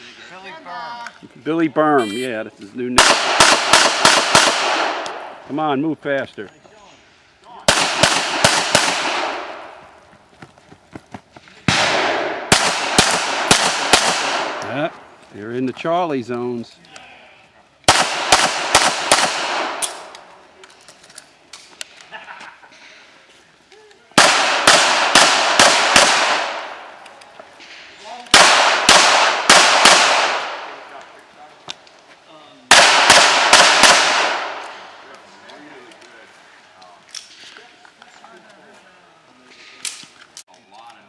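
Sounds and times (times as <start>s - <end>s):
pistol shots with echo: 3.0s - 5.3s, 7.7s - 9.8s, 11.7s - 14.6s, 17.9s - 20.1s, 24.2s - 27.0s, 28.3s - 30.9s, 32.7s - 34.9s.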